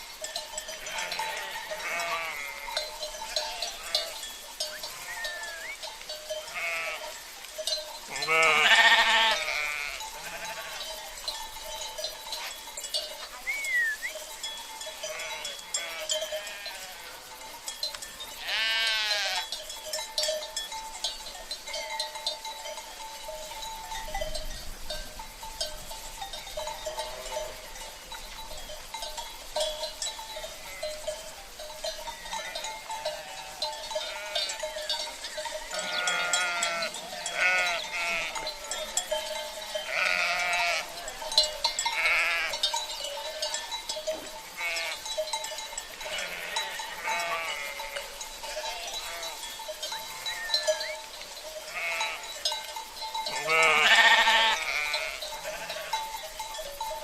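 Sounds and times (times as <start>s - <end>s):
livestock bells clanking: 0.0s - 57.0s
sheep bleating: 0.7s - 4.2s, 4.8s - 5.8s, 6.5s - 7.1s, 8.1s - 10.9s, 15.0s - 17.3s, 18.4s - 19.5s, 33.1s - 34.7s, 35.7s - 38.5s, 39.8s - 41.2s, 41.9s - 42.6s, 44.6s - 45.1s, 46.0s - 49.4s, 51.7s - 52.3s, 53.3s - 56.0s.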